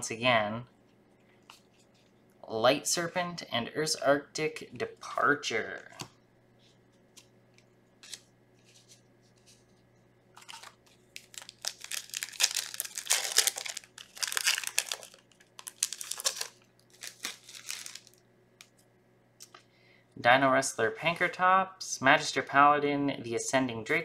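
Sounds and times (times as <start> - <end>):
foil wrapper crinkling and tearing: 8.0 - 8.3, 10.4 - 18.8.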